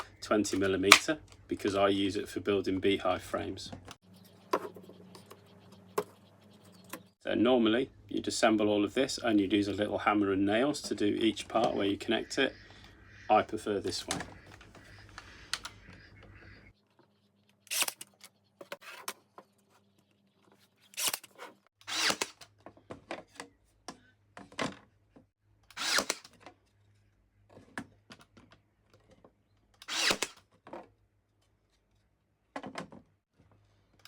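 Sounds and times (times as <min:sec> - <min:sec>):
brad nailer shots: 0:21.0 - 0:22.4, 0:25.7 - 0:26.4, 0:29.8 - 0:30.4.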